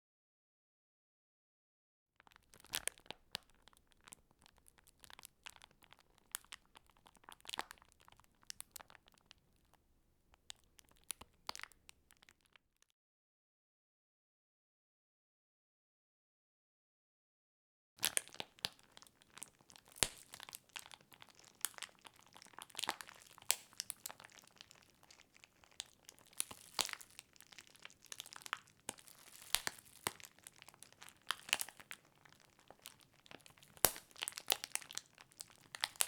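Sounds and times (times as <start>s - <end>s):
crinkly material crumpled like fire: 2.3s - 9.8s, 18.0s - 36.0s.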